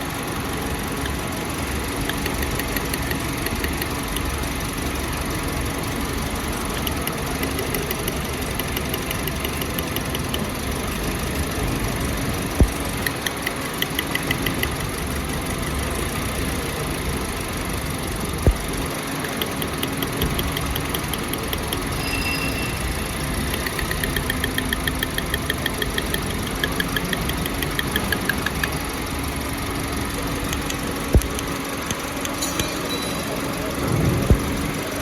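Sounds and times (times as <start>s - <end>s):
car engine idling with ticking: 0.0s - 35.0s
sharp clicks: 1.0s - 4.6s, 6.4s - 10.8s, 12.4s - 15.0s, 18.4s - 22.0s, 22.8s - 28.8s, 30.4s - 33.2s.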